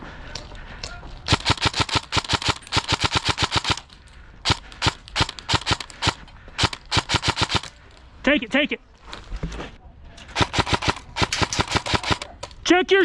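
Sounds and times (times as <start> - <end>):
airsoft gun firing rapid shots: 1.3 - 7.8, 10.4 - 12.4.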